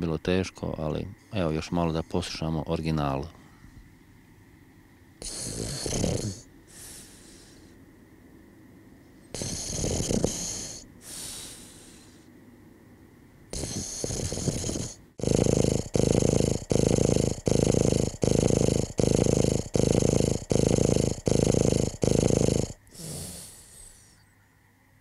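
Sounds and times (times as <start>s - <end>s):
soft breaths: 3.2s - 4.0s, 5.2s - 7.9s, 9.1s - 12.4s, 13.6s - 24.3s
person snoring: 5.2s - 7.7s, 9.4s - 12.2s, 13.5s - 24.2s.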